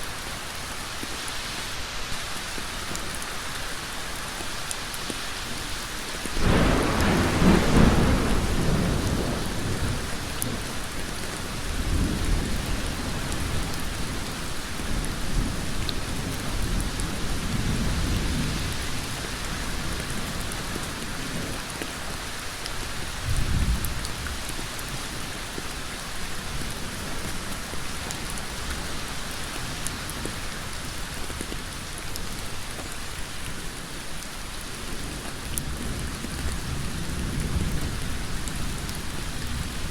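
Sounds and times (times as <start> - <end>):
heavy rain on hard surface: 0.0 - 39.9
thunder rumbles: 6.4 - 21.7, 23.2 - 25.0.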